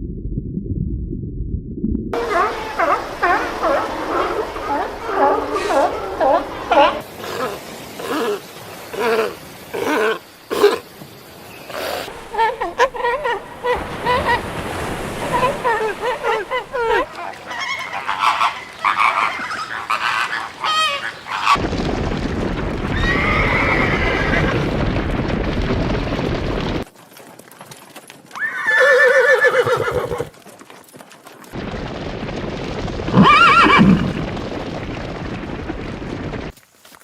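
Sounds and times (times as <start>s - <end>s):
horses whinnying: 11.7s - 21.6s, 22.9s - 24.7s, 28.3s - 30.4s, 33.1s - 34.2s.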